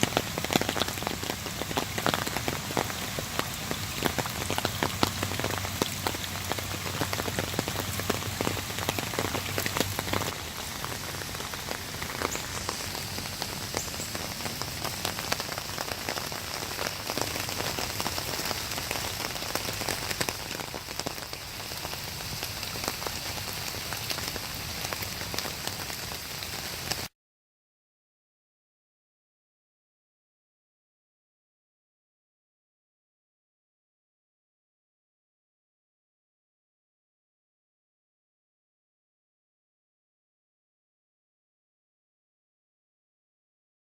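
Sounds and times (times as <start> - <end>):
rushing water with splashes: 0.0 - 27.1.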